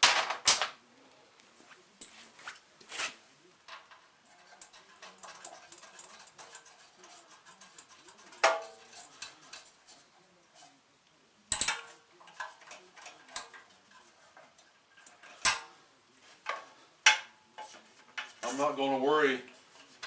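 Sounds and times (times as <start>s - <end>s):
hand tools clinking and rattling: 3.0s - 10.7s, 11.5s - 15.8s
sharp metal clanks: 11.5s - 11.9s.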